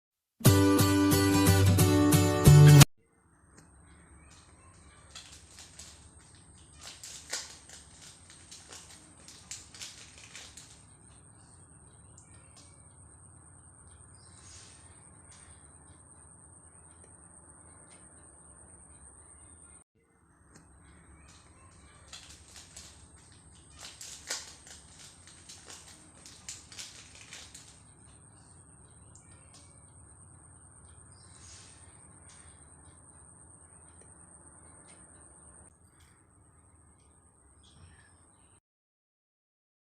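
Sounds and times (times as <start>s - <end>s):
packaging crinkling and rustling: 5.0s - 11.0s, 21.3s - 27.9s.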